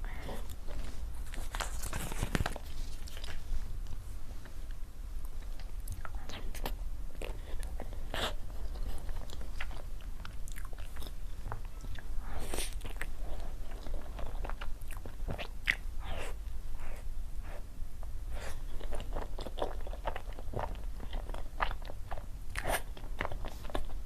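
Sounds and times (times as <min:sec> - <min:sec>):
low steady hum: 0:00.0 - 0:24.0
person chewing food: 0:04.4 - 0:17.7, 0:18.3 - 0:24.0.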